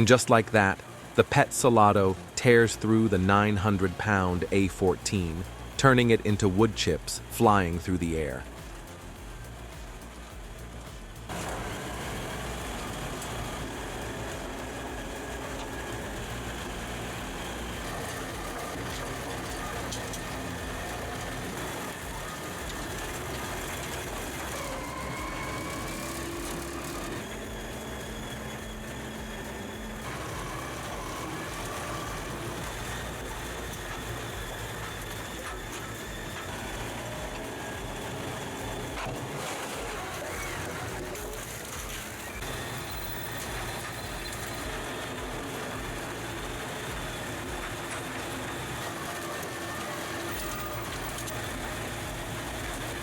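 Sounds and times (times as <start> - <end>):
heavy diesel machinery grinding: 0.0 - 53.0.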